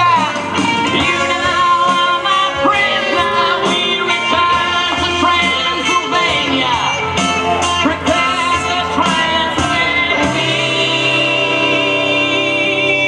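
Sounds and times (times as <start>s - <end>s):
rock and roll song with singing: 0.0s - 13.0s.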